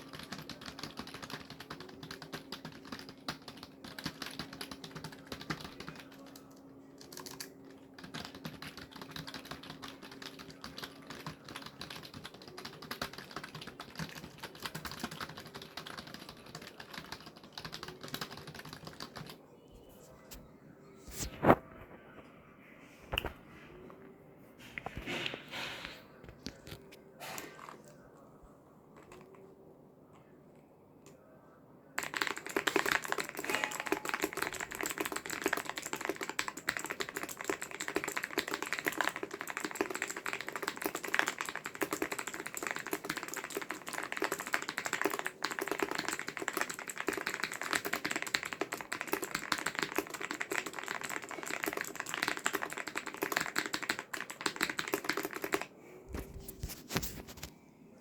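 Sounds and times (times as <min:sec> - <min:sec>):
rapid keyboard typing: 0:00.0 - 0:19.4, 0:28.9 - 0:29.4, 0:32.0 - 0:57.5.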